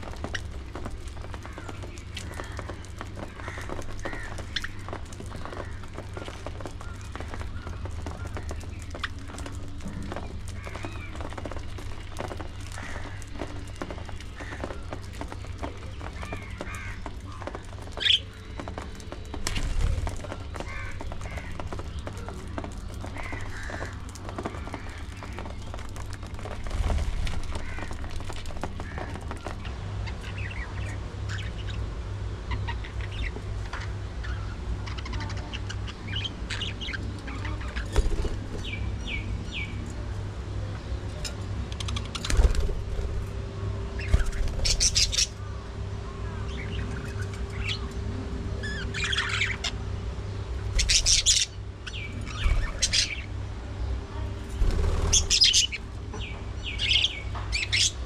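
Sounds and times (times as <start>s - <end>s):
steady low rumble: 0.0s - 58.0s
budgerigars chirping: 44.0s - 45.4s, 50.8s - 53.3s, 54.7s - 55.8s.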